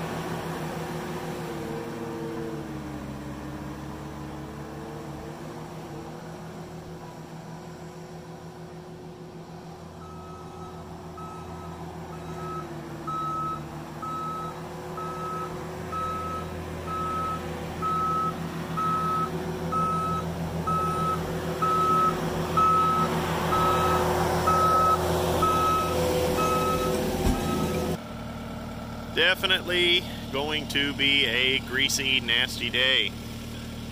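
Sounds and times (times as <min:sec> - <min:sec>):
diesel engine running: 0:00.0 - 0:33.9
reverse alarm beeping: 0:10.0 - 0:27.8.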